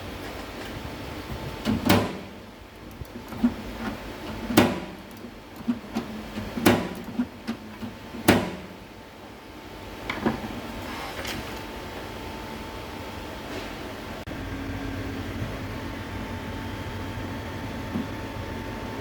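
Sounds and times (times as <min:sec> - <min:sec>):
microwave oven humming: 0:00.0 - 0:19.0
microwave door knocks and clicks: 0:01.6 - 0:02.4, 0:04.3 - 0:07.4, 0:08.2 - 0:08.8.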